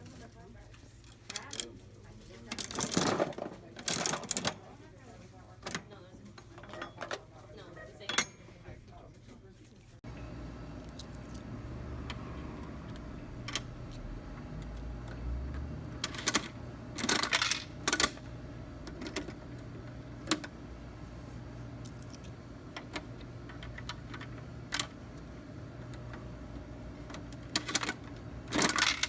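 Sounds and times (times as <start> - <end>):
vending machine clicking and clattering: 1.0 - 4.8, 13.4 - 20.6, 21.9 - 29.0.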